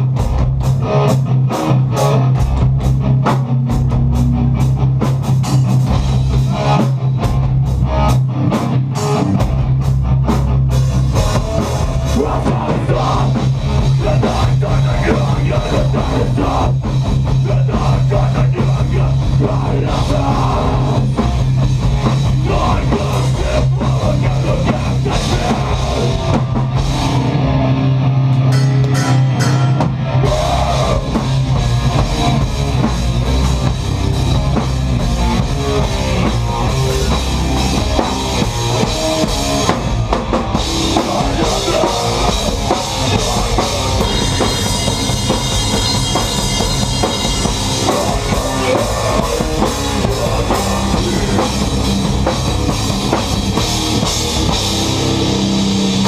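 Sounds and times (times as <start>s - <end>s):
bass guitar: 0.0s - 56.0s
distorted electric guitars: 0.0s - 56.0s
fast drum hits: 28.8s - 56.0s.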